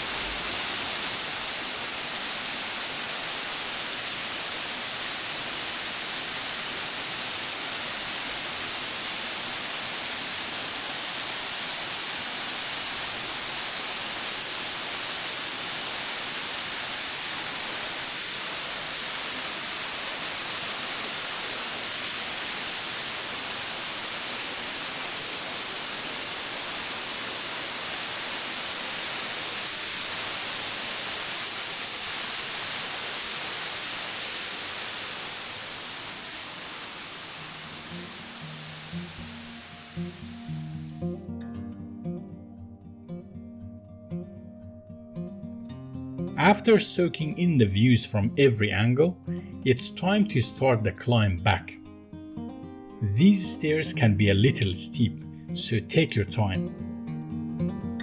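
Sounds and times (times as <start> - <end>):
waterfall rushing over rocks: 0.0 - 41.0.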